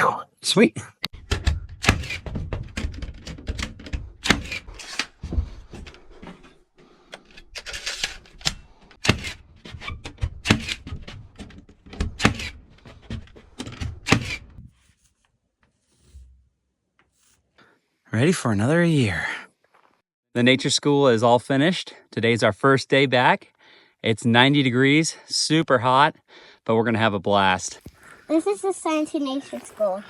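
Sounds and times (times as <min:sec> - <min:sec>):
nailing plywood flooring: 0:01.2 - 0:06.4, 0:09.0 - 0:14.6.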